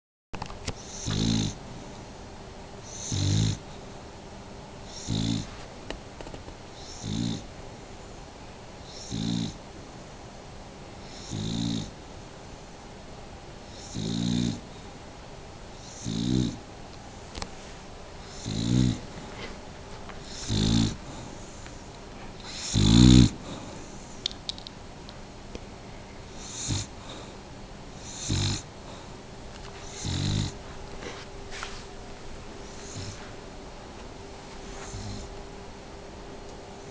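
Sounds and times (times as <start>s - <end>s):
pet snoring: 0.8s - 1.6s, 2.8s - 3.7s, 4.8s - 5.6s, 6.8s - 7.5s, 8.8s - 9.6s, 11.0s - 12.0s, 13.6s - 14.7s, 15.7s - 16.6s, 18.2s - 19.5s, 20.2s - 21.7s, 22.4s - 24.3s, 26.3s - 27.3s, 27.9s - 29.1s, 29.8s - 31.7s, 32.6s - 33.3s, 34.6s - 35.3s.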